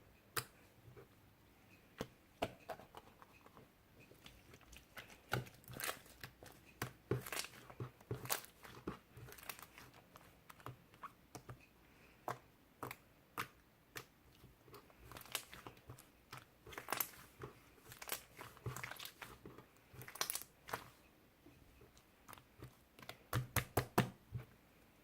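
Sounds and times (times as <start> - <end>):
slime squished making sticky pops: 4.1 - 11.6, 12.3 - 21.0, 21.9 - 24.2.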